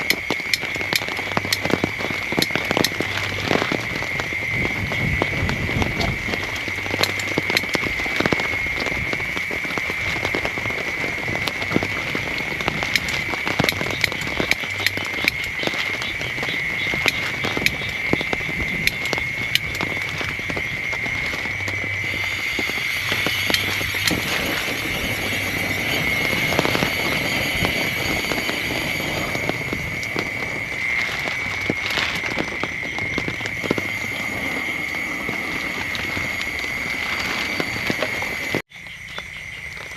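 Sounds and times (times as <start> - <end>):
heavy rain falling: 0.0 - 38.7
high-pitched drone: 21.8 - 32.2.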